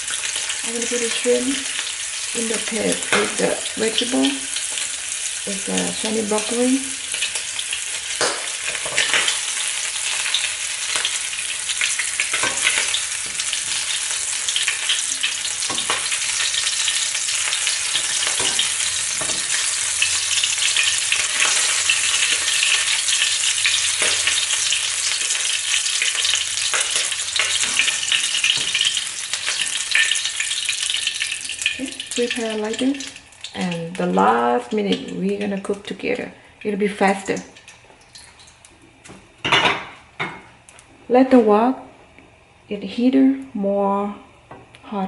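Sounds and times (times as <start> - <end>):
shrimp sizzling in oil: 0.0 - 36.0.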